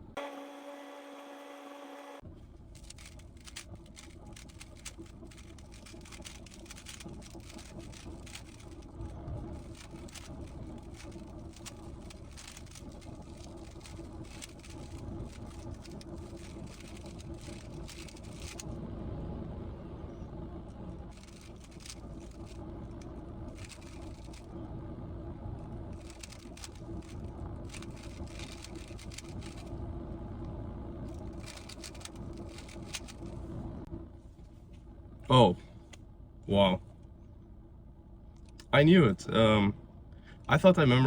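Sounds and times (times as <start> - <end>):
low hum: 0.0 - 41.0
puzzle cube clicking: 3.0 - 8.7.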